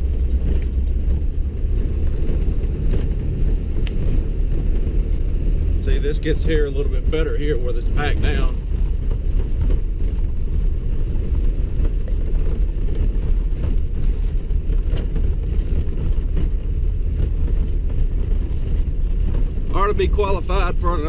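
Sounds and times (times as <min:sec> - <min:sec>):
vehicle engine and tyre rumble: 0:00.0 - 0:21.0.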